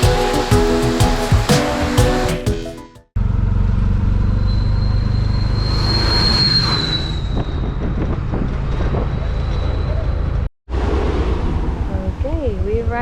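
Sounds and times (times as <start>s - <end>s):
background music with a beat: 0.0s - 3.1s
vehicle engine rumbling with whine: 3.2s - 12.0s.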